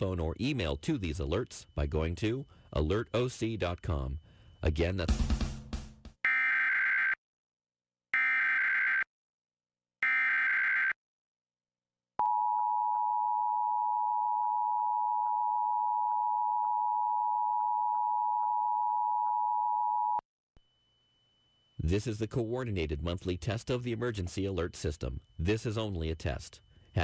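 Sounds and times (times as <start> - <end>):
warbling digital data tones: 0.0 - 5.1, 20.7 - 27.0.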